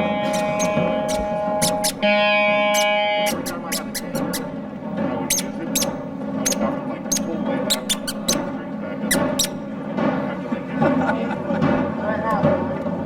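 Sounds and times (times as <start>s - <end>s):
high-pitched squeaks: 0.0s - 4.6s, 5.2s - 9.7s
low background murmur: 0.0s - 13.0s.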